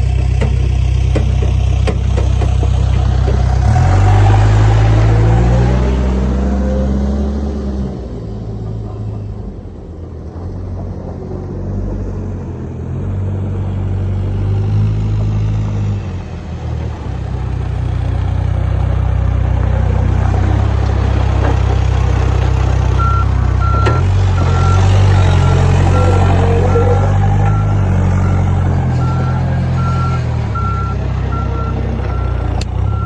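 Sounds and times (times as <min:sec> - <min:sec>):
diesel engine running: 0:00.0 - 0:33.0
reverse alarm beeping: 0:23.0 - 0:33.0.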